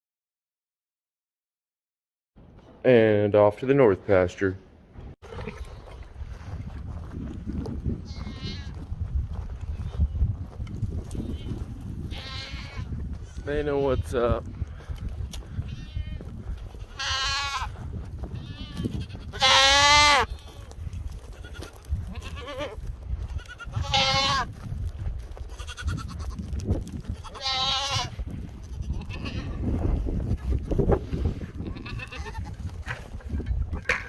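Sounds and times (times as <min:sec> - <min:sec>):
goats bleating: 0:08.0 - 0:08.8, 0:11.1 - 0:14.4, 0:15.5 - 0:24.5, 0:25.4 - 0:29.7, 0:31.0 - 0:32.6.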